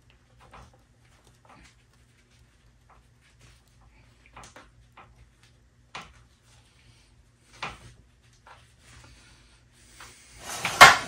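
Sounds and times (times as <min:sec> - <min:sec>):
soft rustle: 0:00.0 - 0:10.9.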